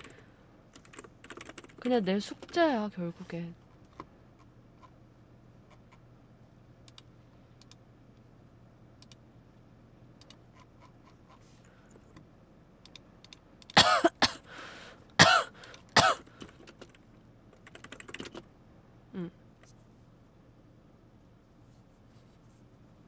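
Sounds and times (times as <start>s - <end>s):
keyboard typing clicks: 0.0s - 1.8s, 17.6s - 18.4s
person coughing: 13.8s - 14.5s, 15.2s - 16.2s.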